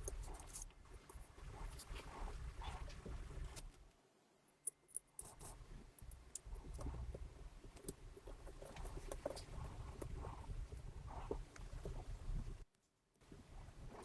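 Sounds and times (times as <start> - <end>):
small tools clicking on watch parts: 4.6 - 7.0.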